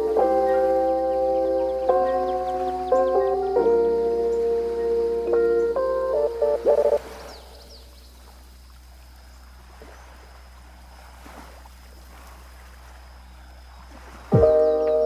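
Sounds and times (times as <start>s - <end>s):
faint sea water washing: 0.0s - 15.0s
bell-like music tones: 14.4s - 15.0s.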